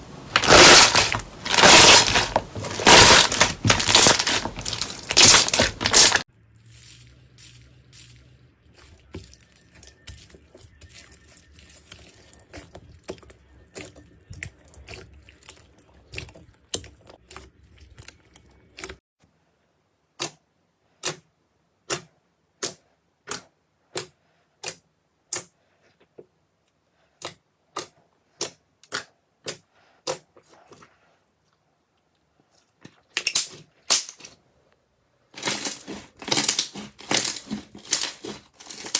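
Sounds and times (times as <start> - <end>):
slime crackling: 0.0 - 6.2, 35.4 - 38.9.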